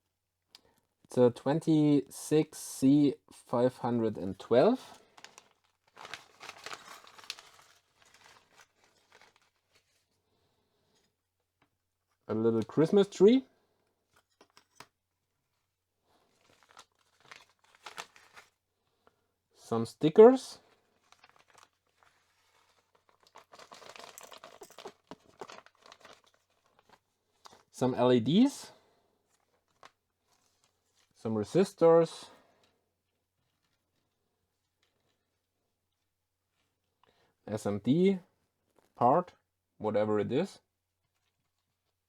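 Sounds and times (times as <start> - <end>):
packaging crinkling and rustling: 4.9 - 10.2, 16.2 - 18.6, 20.7 - 27.7, 29.4 - 31.2.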